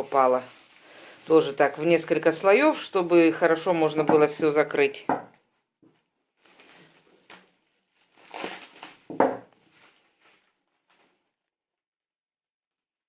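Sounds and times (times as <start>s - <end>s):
cling film rustling and crinkling: 0.0s - 3.8s, 5.4s - 11.5s.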